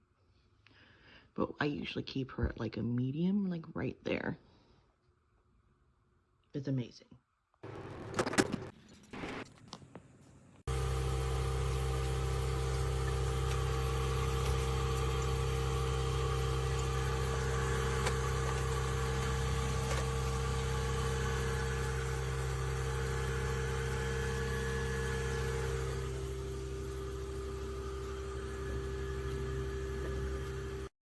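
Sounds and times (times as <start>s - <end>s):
fogger motor and fan hum: 10.7s - 30.9s.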